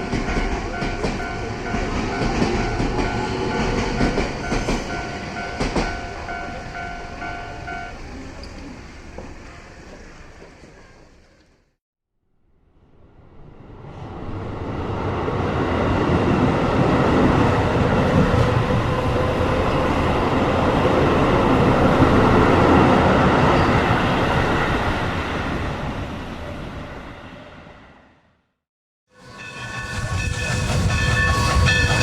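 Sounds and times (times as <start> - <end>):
train rumbling on rails: 0.0 - 11.8, 12.8 - 28.2, 29.1 - 32.0.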